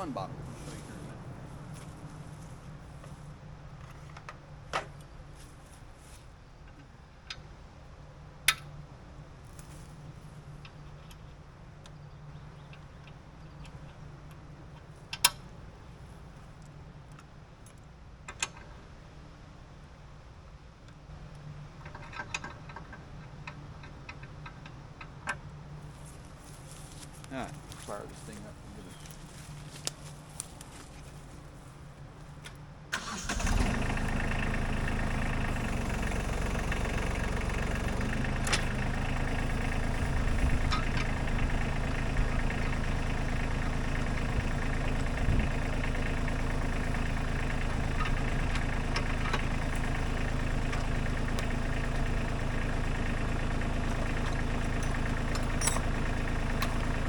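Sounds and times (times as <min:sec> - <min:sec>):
diesel engine cranking and idling: 0:00.0 - 0:57.0
low steady hum: 0:00.0 - 0:57.0
metal clinks and ticks: 0:54.2 - 0:56.0.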